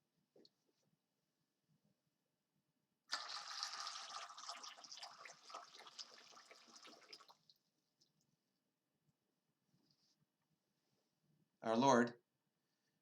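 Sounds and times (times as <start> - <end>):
water sloshing and splashing: 3.3 - 7.5.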